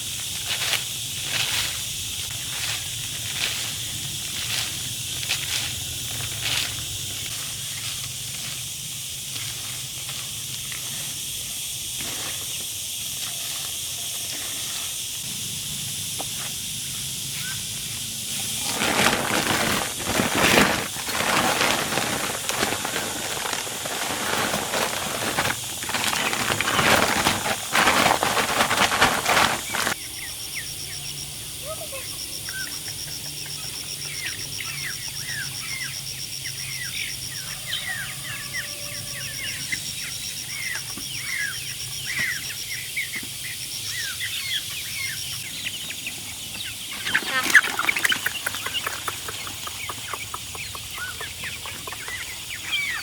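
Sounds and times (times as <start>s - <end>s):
outdoor ambience hiss: 0.0s - 53.0s
loud rustling and knocking: 18.3s - 30.0s.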